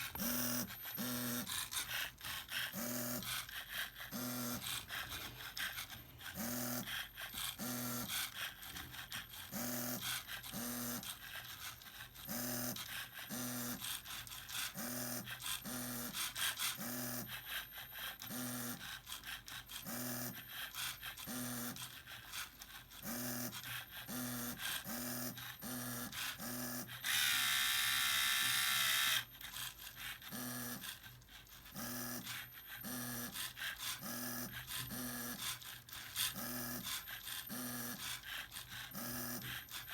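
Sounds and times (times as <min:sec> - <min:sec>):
electric motors whirring: 0:25.6 - 0:30.9.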